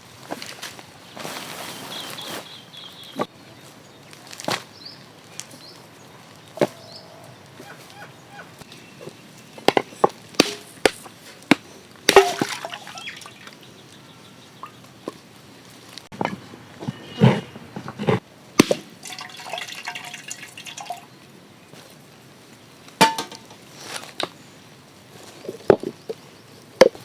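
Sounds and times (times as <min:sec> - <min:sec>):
small birds chirping: 0:01.0 - 0:12.0, 0:12.6 - 0:16.0
blade chopping coconuts: 0:09.6 - 0:13.1.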